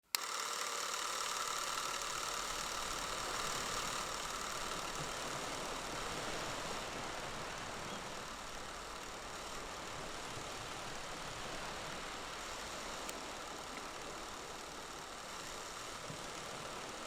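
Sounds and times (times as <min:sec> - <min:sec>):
mechanical whir: 0:00.0 - 0:11.4.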